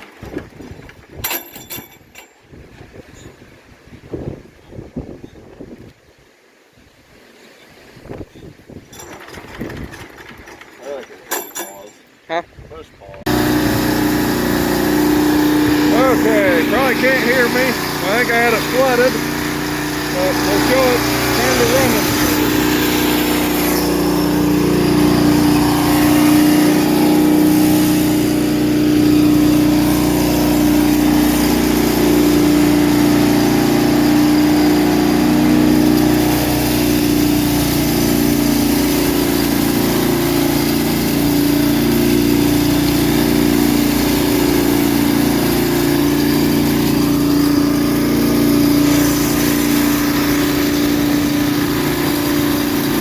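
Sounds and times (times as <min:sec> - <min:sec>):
air-cooled engine running: 0:13.3 - 0:53.0.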